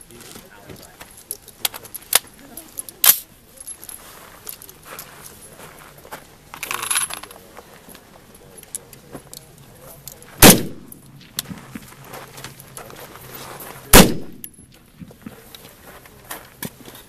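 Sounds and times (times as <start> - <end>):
metallic clinking and rustling: 0.0 - 5.9, 6.5 - 13.4
rifle shot: 10.4 - 11.0, 13.9 - 14.5.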